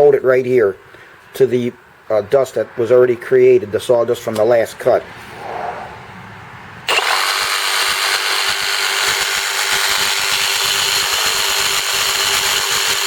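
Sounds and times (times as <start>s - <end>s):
jigsaw running: 6.9s - 13.0s.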